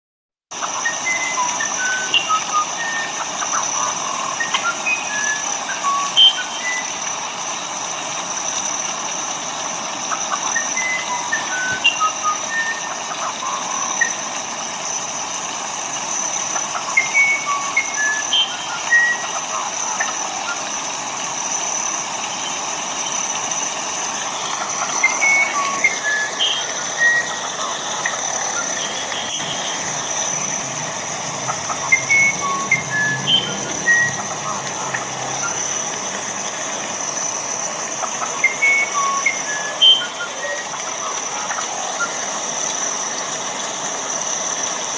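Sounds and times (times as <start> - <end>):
bird chirps and whistles: 0.6 - 7.2, 10.1 - 14.3, 16.2 - 20.7, 24.3 - 35.9, 38.2 - 42.3
rain hiss: 0.6 - 44.9.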